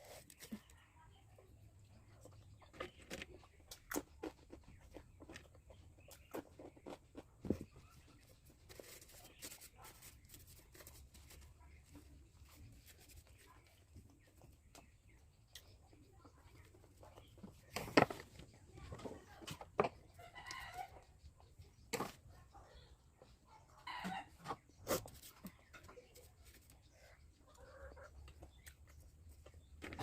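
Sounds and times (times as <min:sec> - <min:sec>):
chewing clicks and smacks: 0:03.3 - 0:07.5.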